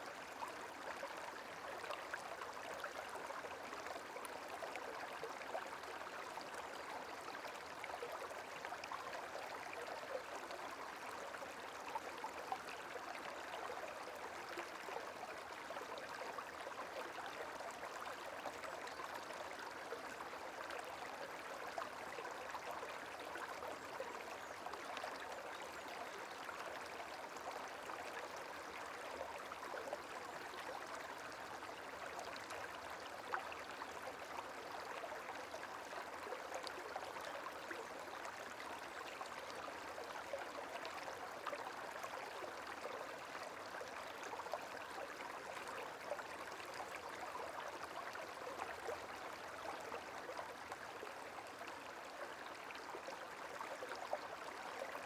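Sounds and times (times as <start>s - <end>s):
stream flowing with splashes: 0.0s - 55.0s.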